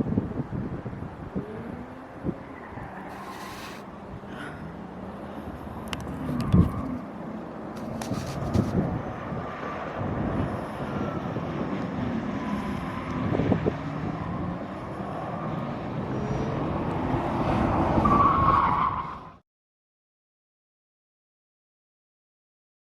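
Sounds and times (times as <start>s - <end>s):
wind noise on microphone: 0.0s - 4.3s, 5.5s - 7.1s, 7.7s - 14.8s
car driving: 0.0s - 19.3s
tyre squeal: 2.4s - 3.8s.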